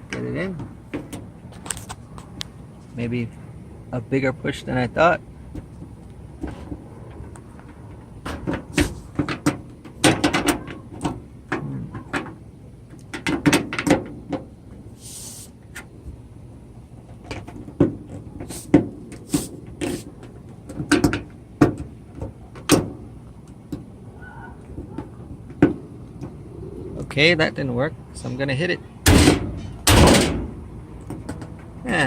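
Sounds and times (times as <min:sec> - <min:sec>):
brief hiss: 0:15.0 - 0:15.6.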